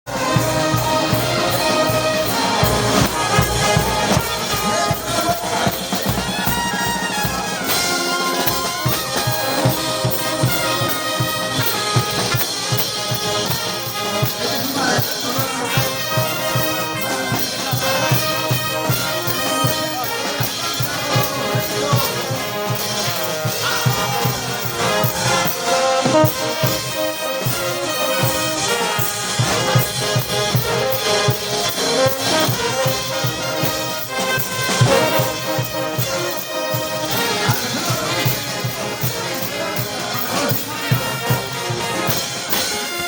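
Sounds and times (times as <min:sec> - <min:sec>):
brass band playing: 0:00.0 - 0:43.0.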